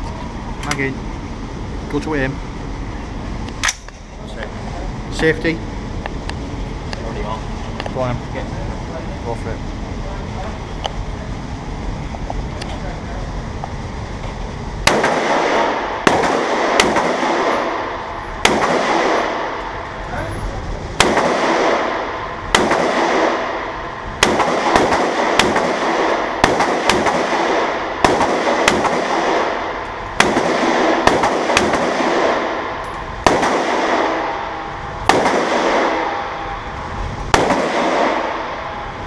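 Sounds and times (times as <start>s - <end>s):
rifle shots echoing: 14.8s - 20.0s, 21.0s - 36.4s, 37.3s - 38.6s.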